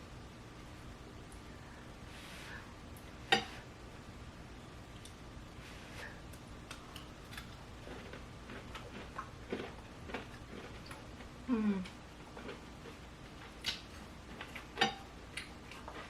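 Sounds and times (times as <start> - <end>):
chewing crispy food: 6.3 - 16.0.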